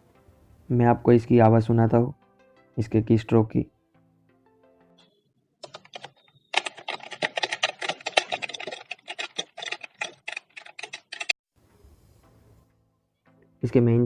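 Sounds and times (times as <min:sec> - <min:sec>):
keyboard typing: 0:05.6 - 0:11.4.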